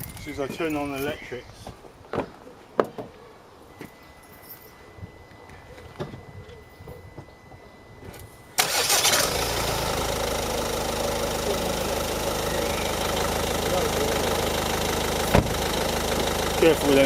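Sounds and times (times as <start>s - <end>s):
car engine cranking and starting: 8.6s - 17.0s
car engine idling: 8.6s - 17.0s.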